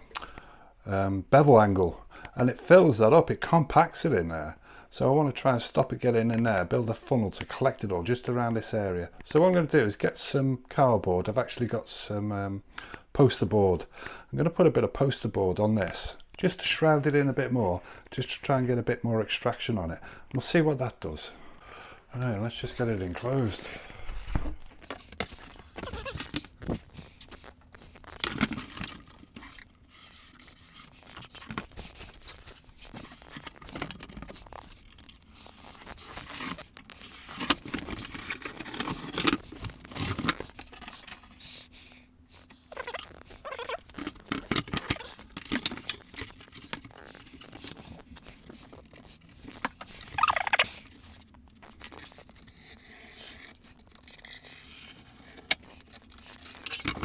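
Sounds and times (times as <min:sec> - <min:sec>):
poster board crinkling and scraping: 0:22.6 - 0:57.0.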